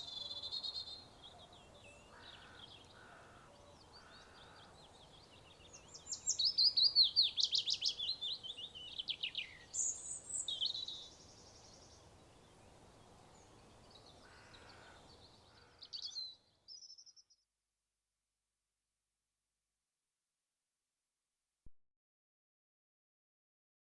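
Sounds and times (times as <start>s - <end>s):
faint outdoor background noise: 0.0s - 17.4s
songbirds singing: 0.0s - 17.4s.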